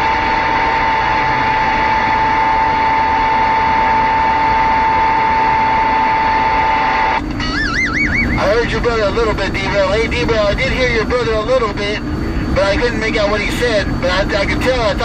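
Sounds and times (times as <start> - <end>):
whistle-like radio tone: 0.0 - 9.9
hissing radio static: 0.0 - 15.0.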